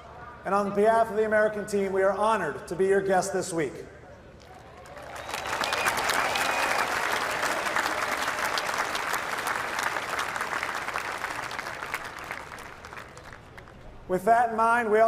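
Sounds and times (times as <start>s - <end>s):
large crowd applauding: 4.4s - 13.9s.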